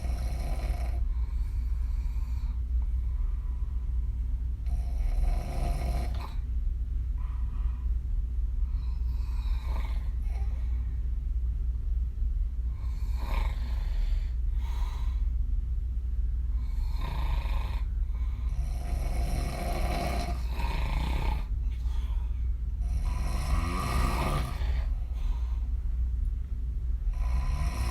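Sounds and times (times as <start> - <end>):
woman snoring: 0.0 - 2.6, 4.6 - 6.4, 12.8 - 14.3, 16.6 - 21.5, 22.8 - 25.2, 27.1 - 27.9
low steady hum: 0.0 - 27.9.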